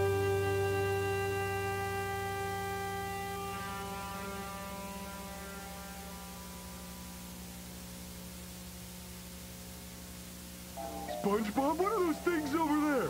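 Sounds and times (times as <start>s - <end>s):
sustained music notes: 0.0s - 7.4s, 10.8s - 13.0s
low electrical hum: 0.0s - 13.0s.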